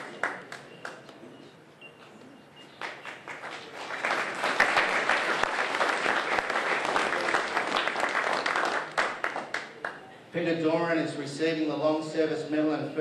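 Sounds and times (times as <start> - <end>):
audience applauding: 0.0 - 1.0, 2.8 - 10.0.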